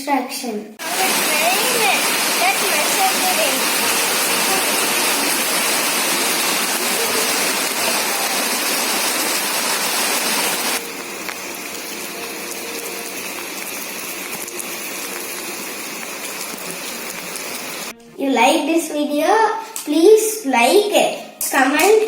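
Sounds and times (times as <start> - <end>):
heavy rain falling: 0.8 - 17.9.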